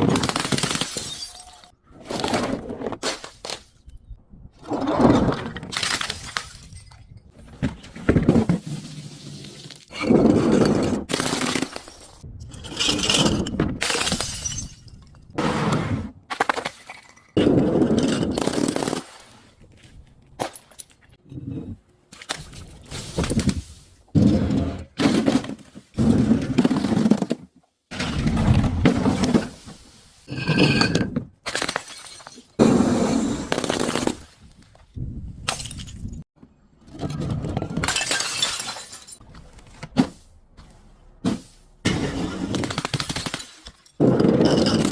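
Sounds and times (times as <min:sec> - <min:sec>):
glass bottles crushing and breaking: 0:00.0 - 0:01.7, 0:05.7 - 0:07.2, 0:09.6 - 0:15.4, 0:30.4 - 0:32.6, 0:35.5 - 0:36.2, 0:37.7 - 0:39.2, 0:41.9 - 0:44.9.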